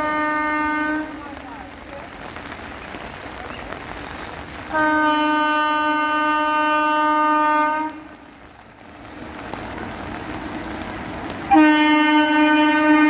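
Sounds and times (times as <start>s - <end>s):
train horn blast: 0.0s - 1.4s, 4.7s - 8.2s, 11.5s - 13.0s
passing train noise: 0.0s - 13.0s.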